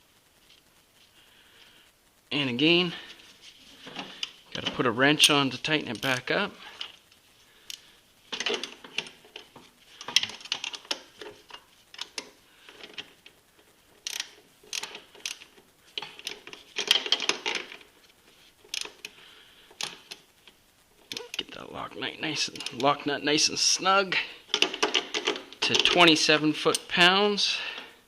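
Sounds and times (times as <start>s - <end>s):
ratchet wrench clicking: 14.0s - 15.5s, 18.7s - 19.0s.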